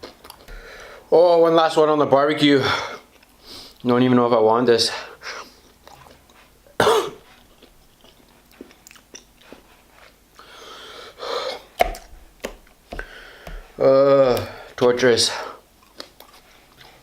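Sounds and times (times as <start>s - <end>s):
man coughing: 6.8s - 7.3s
breathy exhale: 10.4s - 11.6s.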